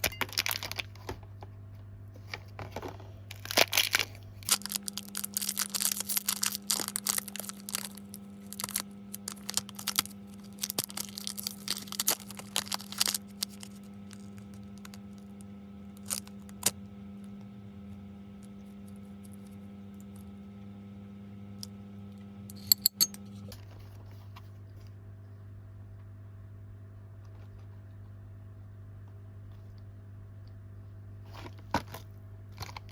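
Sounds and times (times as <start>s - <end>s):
plastic packaging crinkling: 0.0s - 1.4s, 2.2s - 16.8s
low hum: 0.0s - 31.2s.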